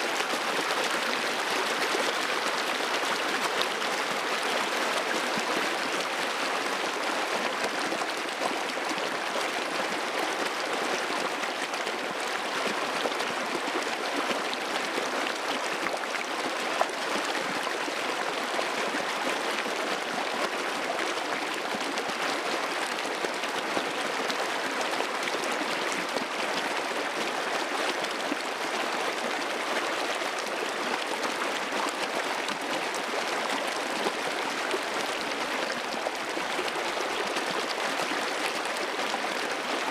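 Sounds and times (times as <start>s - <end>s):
running water babbling: 0.0s - 39.9s.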